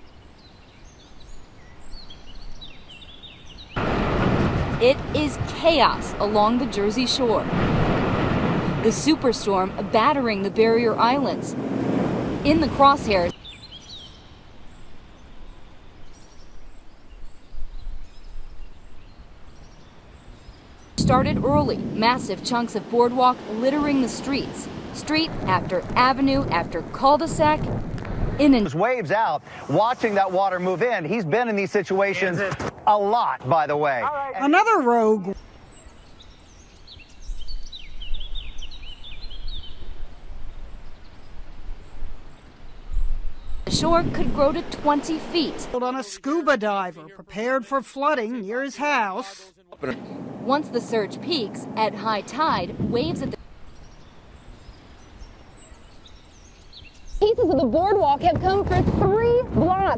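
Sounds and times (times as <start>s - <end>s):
small birds chirping: 0.0s - 3.9s, 12.4s - 27.6s, 35.3s - 45.8s, 49.8s - 58.6s
low rumbling noise: 3.7s - 13.3s, 21.0s - 28.7s
faint bird chirps: 53.6s - 57.4s.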